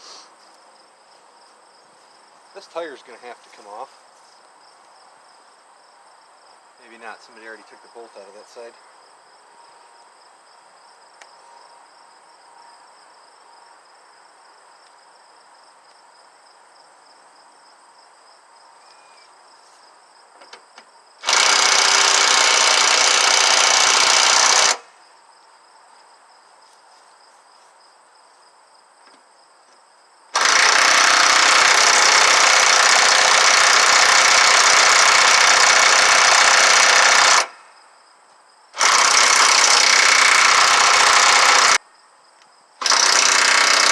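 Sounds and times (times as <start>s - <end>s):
faint insect chirring: 0.0s - 21.2s, 24.9s - 30.3s
impact wrench hammering: 21.2s - 24.8s.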